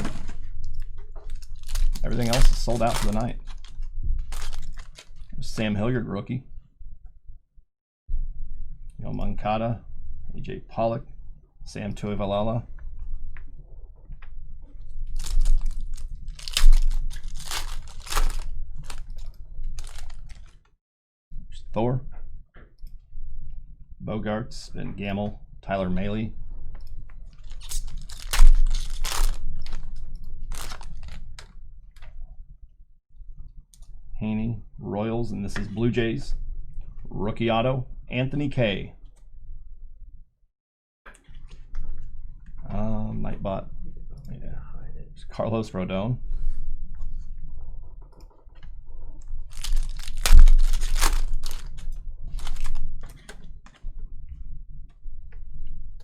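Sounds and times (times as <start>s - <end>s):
card packs crinkling: 0.0s - 5.6s, 15.1s - 20.6s, 27.3s - 31.5s, 49.5s - 53.1s
cards clicking and rustling: 1.2s - 5.4s, 15.2s - 20.6s, 27.4s - 32.1s, 49.5s - 53.4s.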